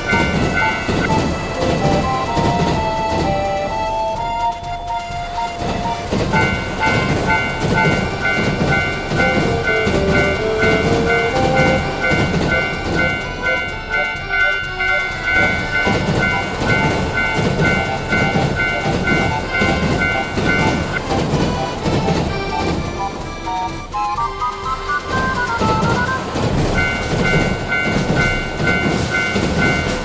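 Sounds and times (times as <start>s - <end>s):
crossing warning bell ringing: 0.0s - 30.0s
train clattering on rails: 0.0s - 30.0s.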